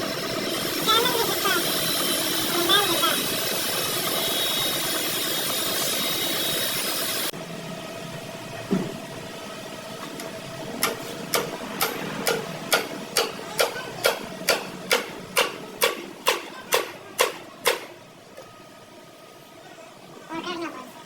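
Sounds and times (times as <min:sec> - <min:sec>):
steady background hum: 0:00.0 - 0:21.0
hammer striking metal: 0:10.8 - 0:18.0.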